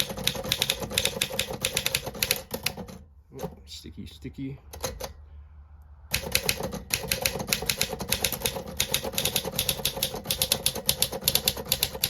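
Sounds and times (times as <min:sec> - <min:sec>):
typewriter typebar clacks: 0:00.0 - 0:02.9, 0:06.2 - 0:12.0.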